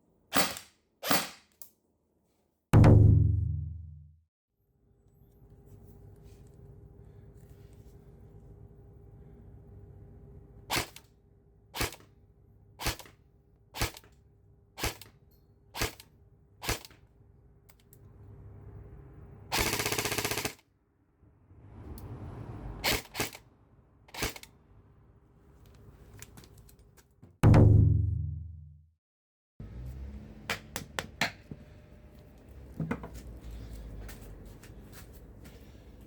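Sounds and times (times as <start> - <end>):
airsoft gun single shots: 0.3 - 1.5
airsoft gun full-auto burst: 11.8 - 12.0, 19.5 - 20.6.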